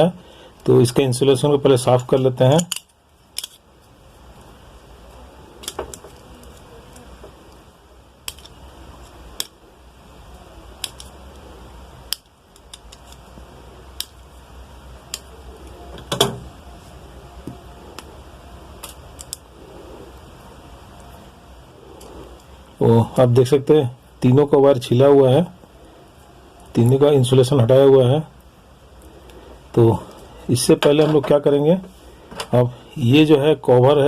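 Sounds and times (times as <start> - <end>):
wire stripping clicks and snips: 2.6 - 3.6, 10.8 - 11.2, 12.1 - 13.3, 18.8 - 19.5.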